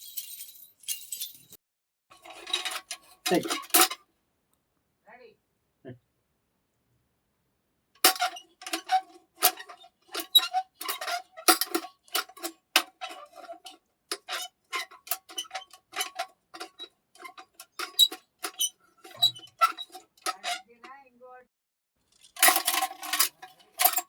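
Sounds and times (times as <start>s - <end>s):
metal objects clinking: 0.0s - 4.0s, 8.0s - 20.6s, 22.1s - 24.0s.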